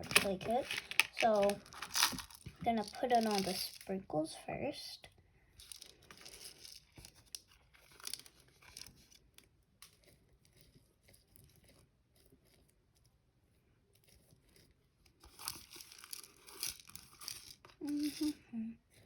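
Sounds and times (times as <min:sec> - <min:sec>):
plastic packaging crinkling: 0:00.0 - 0:03.9, 0:05.6 - 0:09.4.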